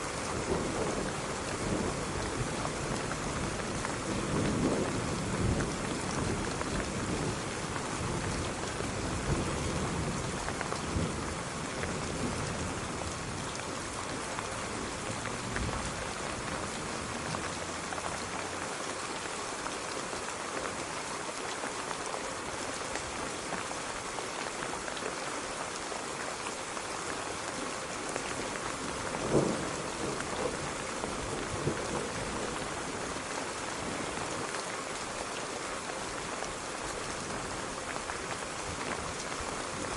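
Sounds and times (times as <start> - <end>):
steady rain hiss: 0.0 - 39.9
low rumble of thunder: 0.1 - 18.6, 28.2 - 34.3.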